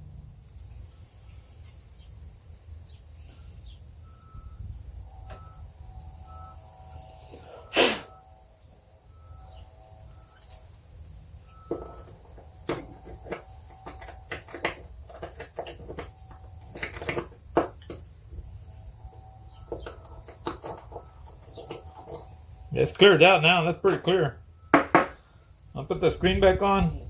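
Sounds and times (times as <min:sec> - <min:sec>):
insects chirring: 0:00.0 - 0:27.0
light clicks and taps of metal parts: 0:11.7 - 0:18.0.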